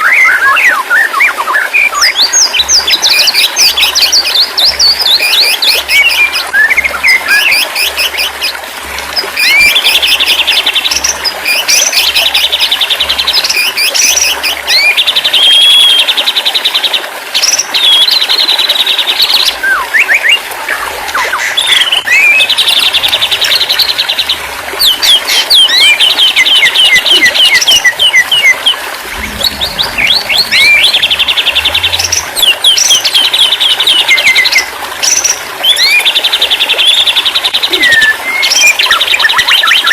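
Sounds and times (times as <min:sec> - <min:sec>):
songbird whistling and trilling: 0:00.0 - 0:03.5, 0:04.2 - 0:08.4, 0:09.4 - 0:12.4, 0:13.4 - 0:16.1, 0:17.4 - 0:18.2, 0:19.5 - 0:22.7, 0:24.8 - 0:36.2, 0:37.7 - 0:39.9.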